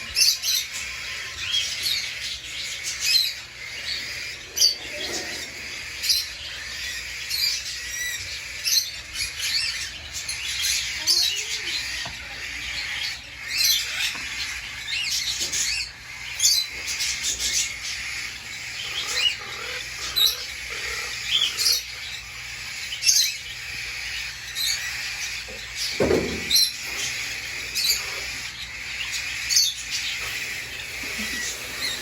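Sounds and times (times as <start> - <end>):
baby parrots chirping: 0.0 - 32.0
bird chatter: 0.0 - 32.0.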